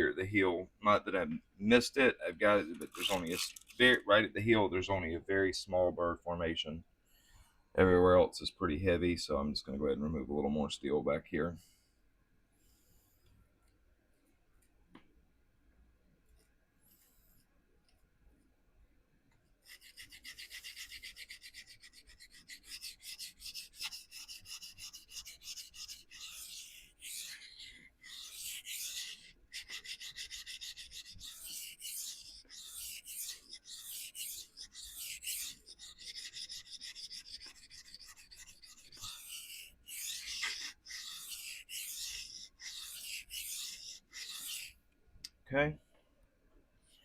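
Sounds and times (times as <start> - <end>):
knife scraping on sharpening stone: 22.6 - 44.7.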